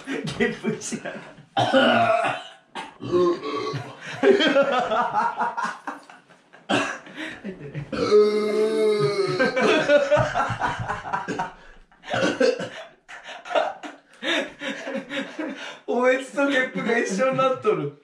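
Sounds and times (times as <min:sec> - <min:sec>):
man burping: 0:01.6 - 0:04.1, 0:07.9 - 0:09.8, 0:11.3 - 0:12.9
man gagging: 0:01.6 - 0:05.6, 0:06.7 - 0:15.4.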